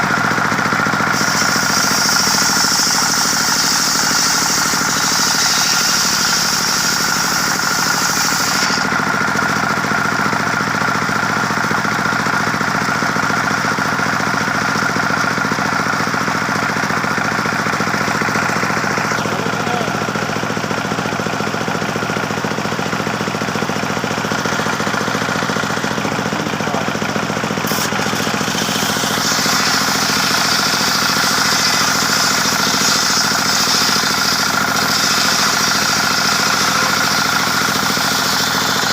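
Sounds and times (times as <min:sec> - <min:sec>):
sawmill engine drone: 0:00.0 - 0:38.9
high saw hiss: 0:01.1 - 0:08.9, 0:27.6 - 0:38.9.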